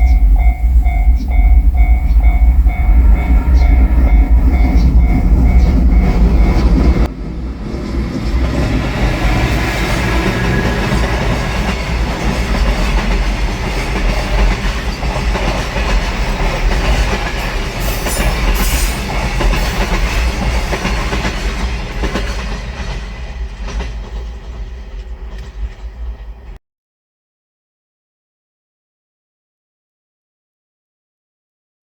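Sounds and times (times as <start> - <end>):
train wheels clattering over rail joints: 8.0 - 26.4.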